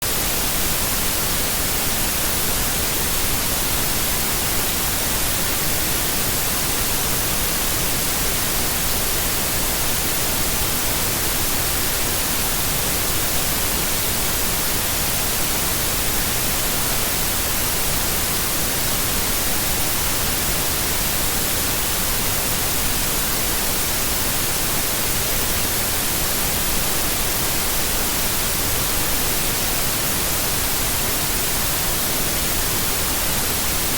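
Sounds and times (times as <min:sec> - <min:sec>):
electronic white noise hiss: 0:00.0 - 0:33.9.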